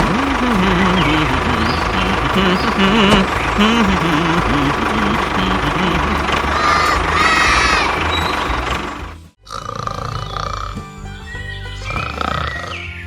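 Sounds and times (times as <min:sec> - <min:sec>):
excited voices: 0:00.0 - 0:08.6
high squealing cry: 0:06.6 - 0:08.0.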